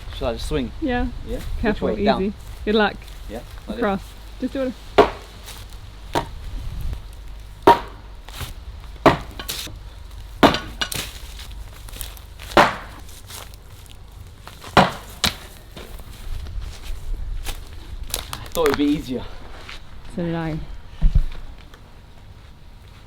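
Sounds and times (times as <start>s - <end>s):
sledgehammer striking brick: 5.0s - 5.4s, 6.1s - 6.4s, 7.6s - 8.1s, 9.0s - 9.8s, 10.4s - 11.2s, 12.5s - 13.1s, 14.7s - 15.5s.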